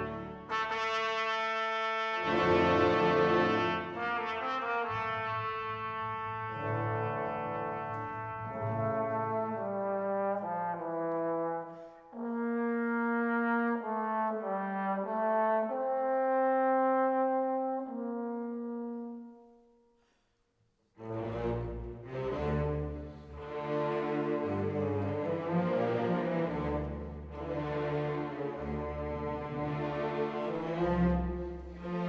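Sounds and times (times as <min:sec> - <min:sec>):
brass fanfare: 0:00.0 - 0:19.4.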